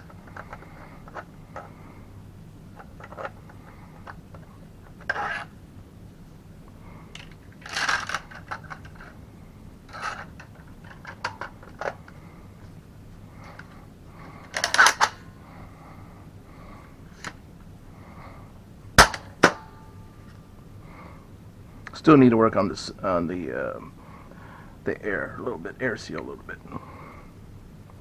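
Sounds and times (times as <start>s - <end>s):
plastic clicks and rattles: 7.2s - 9.2s, 9.9s - 12.2s, 14.5s - 15.2s
toy blaster firing cracks: 14.6s - 15.2s, 19.0s - 19.7s.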